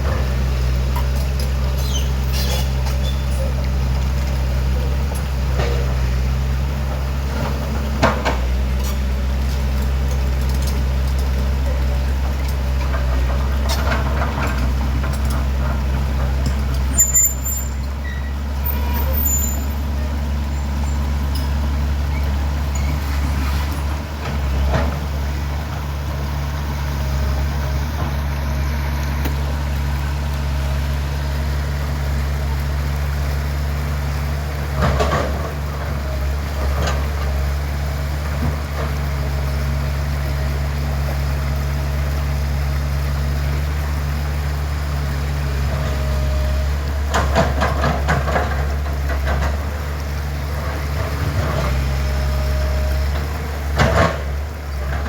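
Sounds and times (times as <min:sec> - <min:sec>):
excavator diesel engine running: 0:00.0 - 0:55.0.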